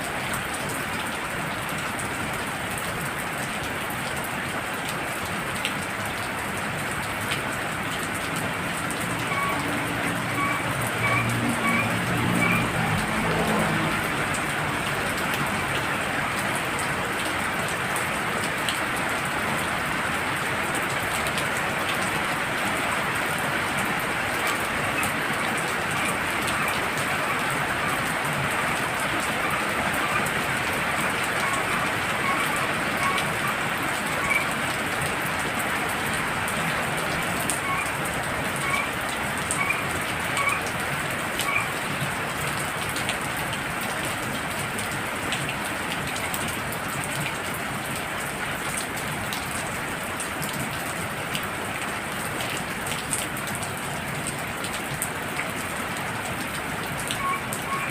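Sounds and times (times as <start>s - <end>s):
heavy rain falling: 0.0s - 57.9s
frog chirping: 39.6s - 40.6s, 41.4s - 41.7s.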